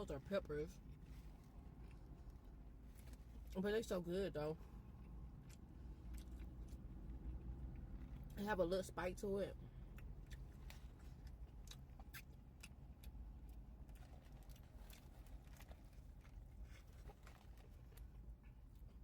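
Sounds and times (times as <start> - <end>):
steady low rumble: 0.0 - 19.0
wet mouth clicks chewing: 5.0 - 6.9, 9.9 - 18.0.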